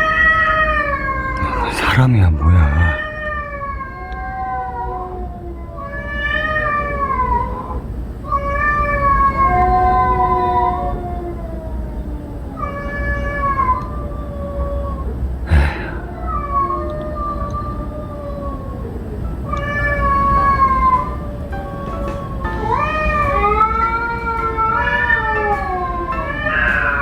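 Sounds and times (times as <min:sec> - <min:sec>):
cats yowling: 0:00.0 - 0:27.0.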